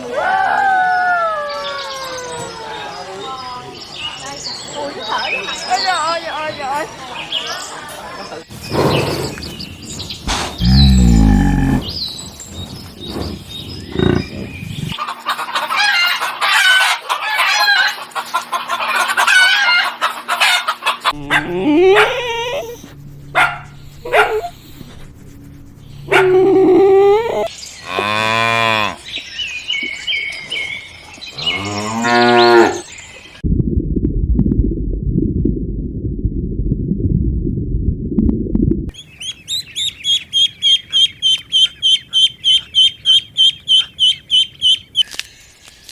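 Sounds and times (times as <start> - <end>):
cattle mooing: 10.6 - 11.9, 21.1 - 29.0
high-pitched bird calls: 21.0 - 33.0, 38.9 - 45.9.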